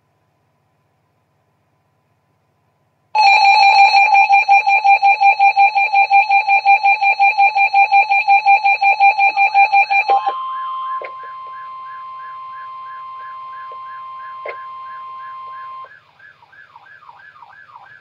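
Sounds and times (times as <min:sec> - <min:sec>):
steady high alert tone: 0:03.2 - 0:15.9
buzzy alarm beep pulsing: 0:03.2 - 0:16.0
warbling alarm sweep: 0:03.2 - 0:18.0.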